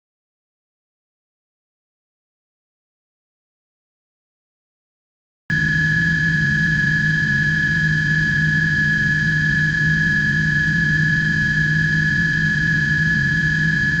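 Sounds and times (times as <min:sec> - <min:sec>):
constant high whine: 0:05.5 - 0:14.0
machine hum with low drone: 0:05.5 - 0:14.0.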